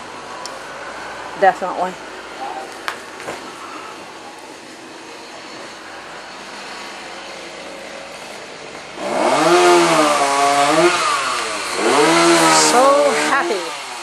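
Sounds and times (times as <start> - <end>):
low background noise: 0.0 - 9.2
chainsaw revving: 8.9 - 14.0.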